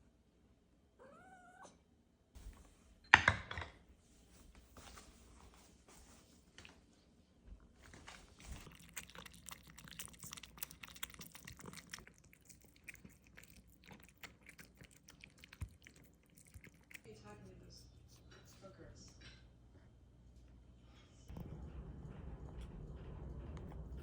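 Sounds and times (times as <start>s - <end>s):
cats chewing food: 7.8s - 18.3s.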